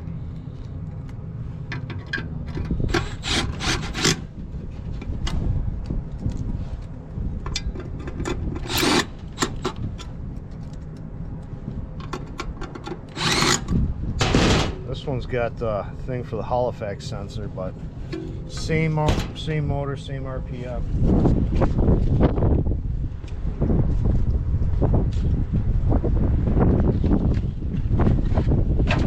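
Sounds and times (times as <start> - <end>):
steady low rumble: 0.0 - 29.0
scraping and clicking of motor parts: 0.4 - 6.9, 7.5 - 14.8.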